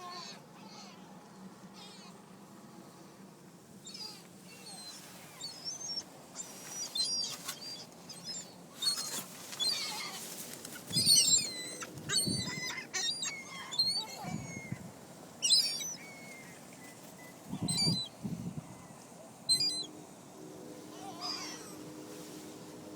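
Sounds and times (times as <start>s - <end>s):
gulls calling: 3.8s - 20.0s, 20.8s - 22.8s.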